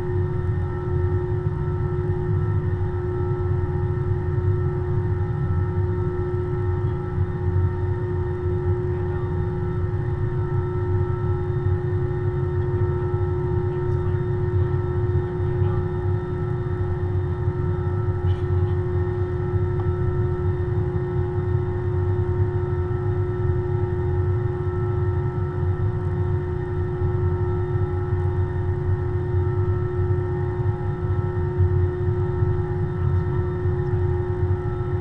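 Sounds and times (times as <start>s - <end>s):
aircraft cabin low rumble: 0.0s - 35.0s
steady whine: 0.0s - 35.0s.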